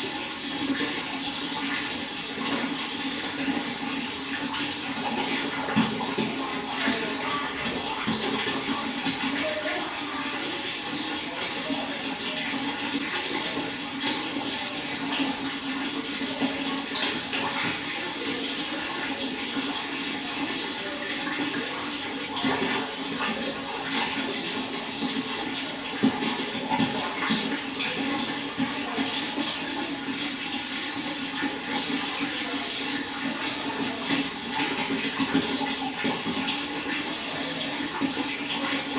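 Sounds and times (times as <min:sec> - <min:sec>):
water running and splashing: 0:00.0 - 0:38.9.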